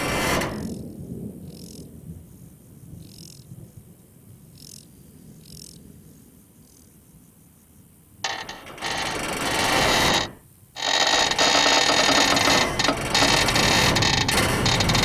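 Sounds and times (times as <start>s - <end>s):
loud harsh noise: 0.0s - 0.7s, 8.3s - 15.0s.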